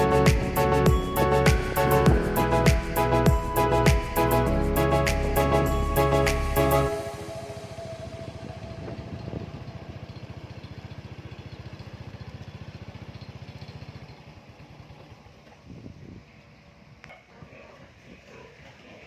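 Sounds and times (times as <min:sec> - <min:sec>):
small engine puttering: 0:09.7 - 0:15.7.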